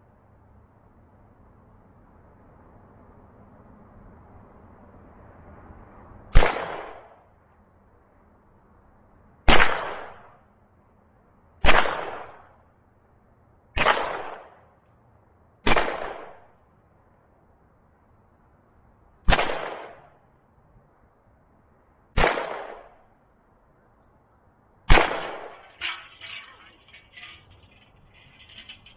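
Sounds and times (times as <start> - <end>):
gunshots with echo: 24.9 - 25.6.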